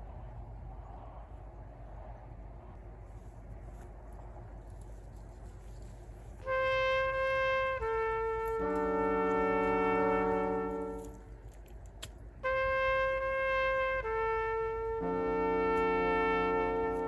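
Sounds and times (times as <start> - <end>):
brass chord: 6.4 - 11.3, 12.4 - 17.0.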